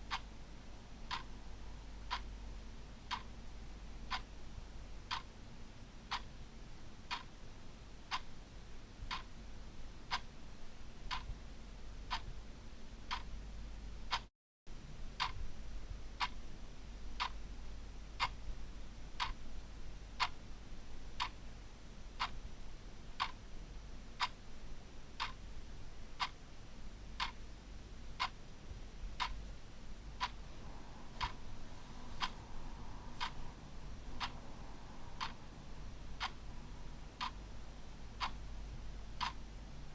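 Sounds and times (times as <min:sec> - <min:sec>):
clock ticking: 0:01.1 - 0:01.3, 0:02.0 - 0:02.3, 0:03.1 - 0:03.3, 0:04.1 - 0:04.3, 0:05.1 - 0:05.3, 0:06.1 - 0:06.3, 0:07.1 - 0:07.3, 0:08.1 - 0:08.3, 0:09.1 - 0:09.3, 0:11.1 - 0:11.3, 0:12.1 - 0:12.3, 0:13.1 - 0:13.3, 0:15.2 - 0:15.4, 0:22.2 - 0:22.4, 0:23.2 - 0:23.4, 0:25.2 - 0:25.4, 0:27.2 - 0:27.4, 0:28.2 - 0:28.4, 0:29.2 - 0:29.4, 0:30.2 - 0:39.5.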